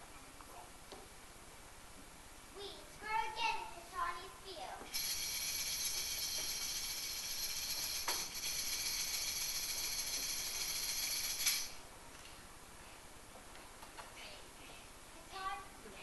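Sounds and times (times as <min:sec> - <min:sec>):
tambourine jingles shaking: 0:04.9 - 0:11.8.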